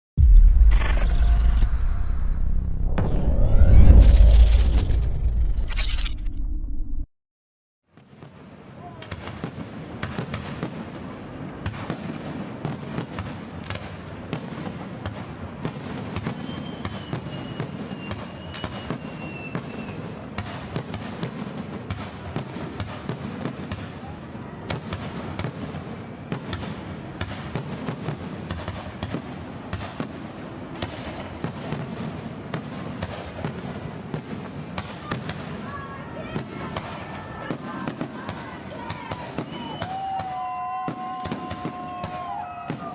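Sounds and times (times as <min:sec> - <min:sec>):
fireworks bangs: 0:08.0 - 0:42.9
faint firework whistle: 0:16.2 - 0:20.2, 0:39.2 - 0:42.9.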